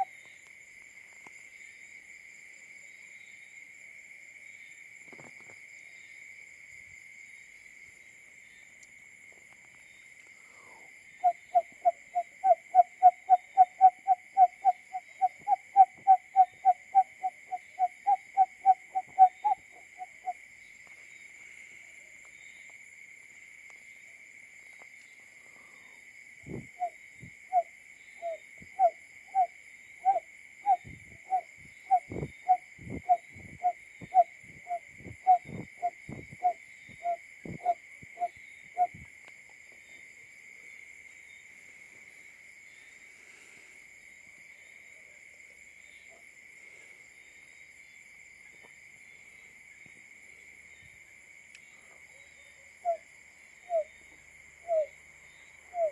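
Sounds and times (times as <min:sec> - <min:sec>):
bird hooting call: 0:11.2 - 0:20.4, 0:26.8 - 0:39.0, 0:52.8 - 0:53.0, 0:53.7 - 0:53.9, 0:54.6 - 0:54.9.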